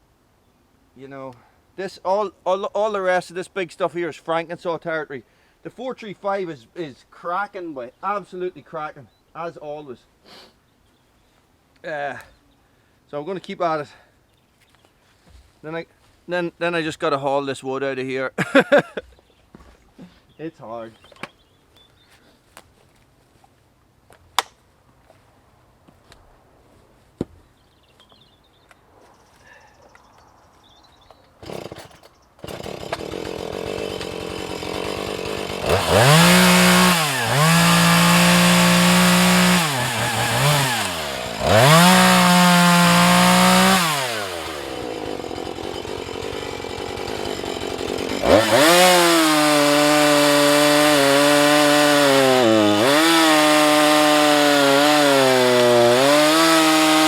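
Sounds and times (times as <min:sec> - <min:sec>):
chainsaw revving and cutting wood: 0:31.4 - 0:57.0.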